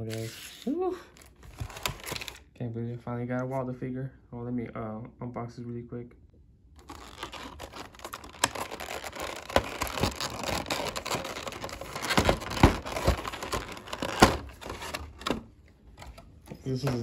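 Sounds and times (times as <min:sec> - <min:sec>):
packaging crinkling: 0:06.8 - 0:15.4.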